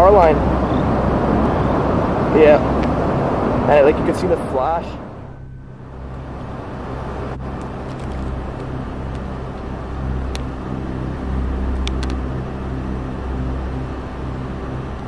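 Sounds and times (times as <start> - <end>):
vehicle engine hum: 0.0 - 15.0
wind-like noise: 0.0 - 15.0
sharp clicks: 11.8 - 12.2.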